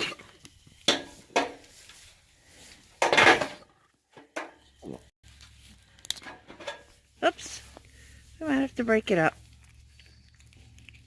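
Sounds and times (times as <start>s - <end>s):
goat crunching carrot: 9.0s - 11.0s.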